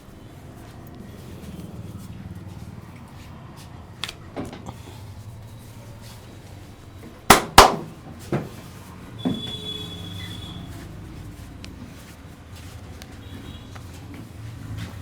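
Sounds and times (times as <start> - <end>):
hands slapping body: 7.3 - 7.9.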